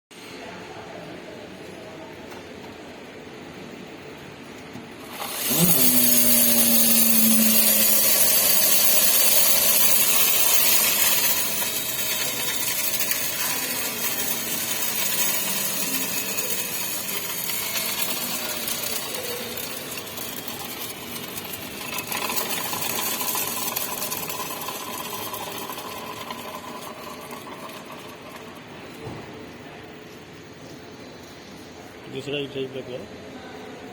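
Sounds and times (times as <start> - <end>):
electric motor whirring hiss: 5.0 - 28.0
high steady tone: 5.0 - 28.9
low motor tone: 5.0 - 29.0.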